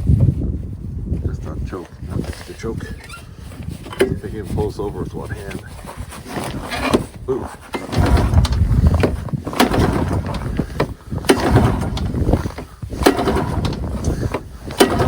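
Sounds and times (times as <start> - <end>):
atv engine running on choke: 6.3 - 15.0
sharp knocks: 7.8 - 15.0.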